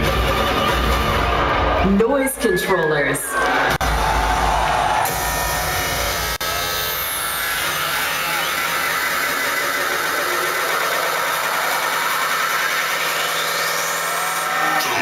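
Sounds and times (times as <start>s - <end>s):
buzzing electronic noise effects: 5.1s - 15.0s.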